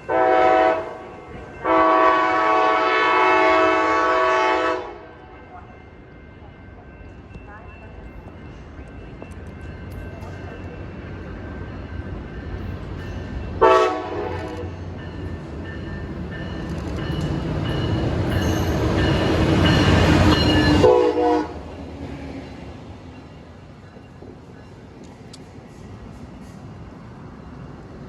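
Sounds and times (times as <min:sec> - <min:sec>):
diesel train horn blast: 0:00.0 - 0:05.3, 0:13.6 - 0:14.7, 0:20.8 - 0:21.7
train rumbling past: 0:00.0 - 0:28.0.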